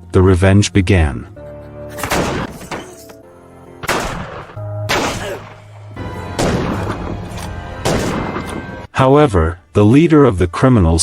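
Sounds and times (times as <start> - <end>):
dramatic background music: 0.0 - 10.0
gunshots with ringing tail: 2.0 - 2.6, 3.8 - 5.6, 6.3 - 7.2, 7.8 - 8.8.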